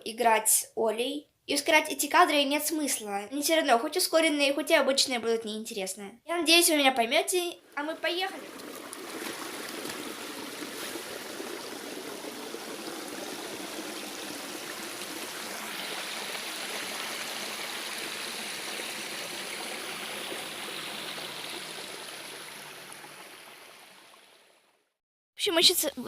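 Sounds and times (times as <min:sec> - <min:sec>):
running water rushing: 0:07.7 - 0:24.7.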